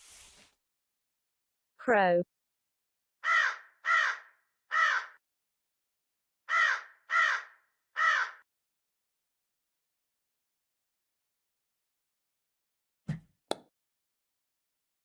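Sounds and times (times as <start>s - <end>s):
crow cawing: 3.2s - 5.2s, 6.5s - 8.5s.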